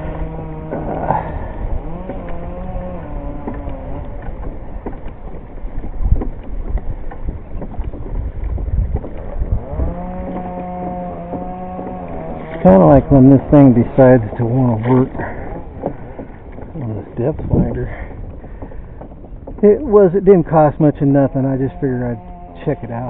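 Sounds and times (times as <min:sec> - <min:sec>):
small engine revving: 0:00.0 - 0:04.6, 0:09.1 - 0:14.2, 0:21.7 - 0:23.0
wind noise: 0:00.0 - 0:11.4, 0:12.2 - 0:21.0.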